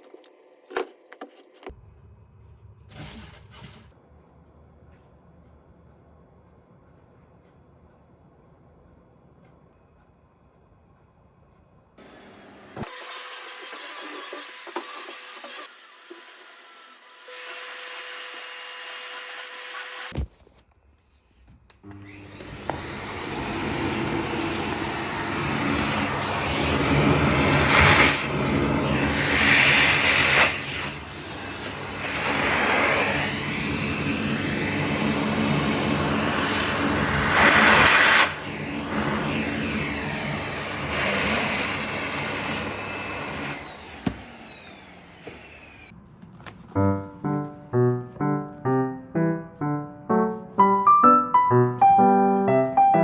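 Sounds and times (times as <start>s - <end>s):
vacuum cleaner motor whining: 12.0s - 15.7s, 21.8s - 45.9s.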